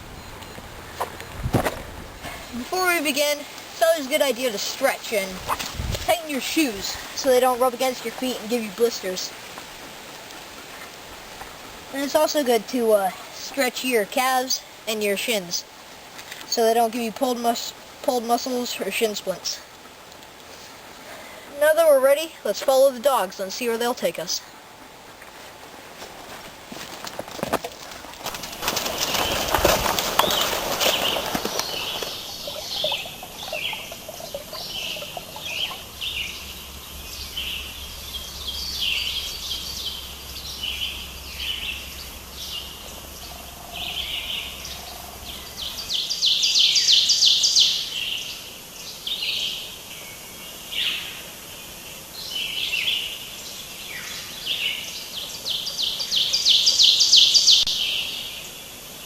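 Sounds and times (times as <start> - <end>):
rustling: 0.0 - 3.8, 19.7 - 21.5, 24.6 - 35.7
birds chirping and calling: 2.2 - 9.4, 28.3 - 58.6
bird trilling rapidly: 30.2 - 36.4.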